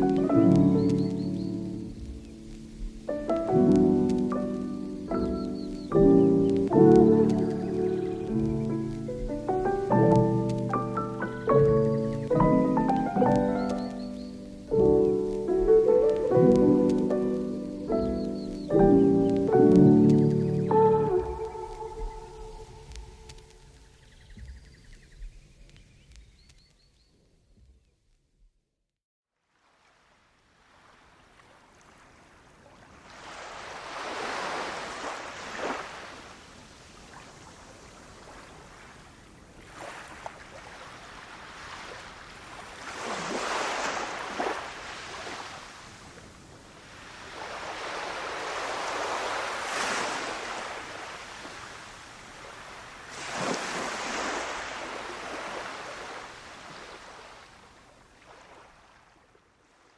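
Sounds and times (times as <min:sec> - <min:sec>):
sea waves breaking: 0:29.6 - 0:59.9.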